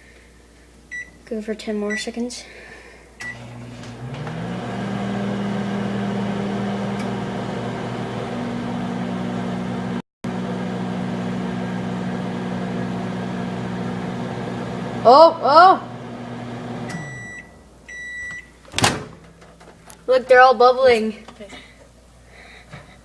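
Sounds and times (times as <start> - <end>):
microwave oven humming: 3.2 - 20.0.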